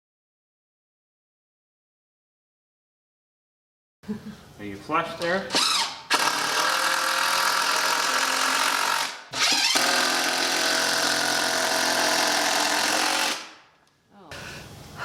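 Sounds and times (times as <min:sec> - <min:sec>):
power tool motor running: 0:05.5 - 0:13.5.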